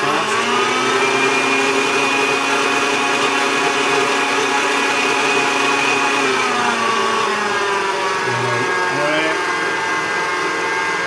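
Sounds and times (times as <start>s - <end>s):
electric mixer whining: 0.0s - 11.0s.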